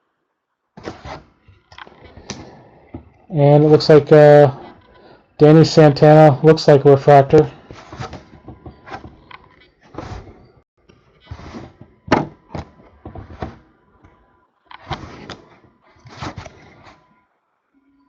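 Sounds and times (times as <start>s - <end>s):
cards sliding and clicking: 0.8s - 2.6s, 14.7s - 17.0s.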